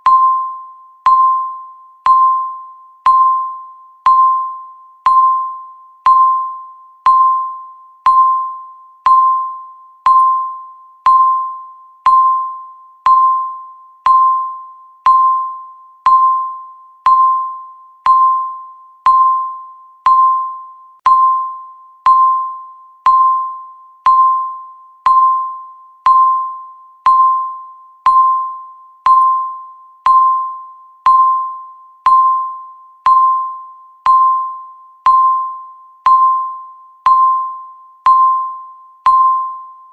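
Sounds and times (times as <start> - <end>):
timer beeping: 0.0 - 39.9.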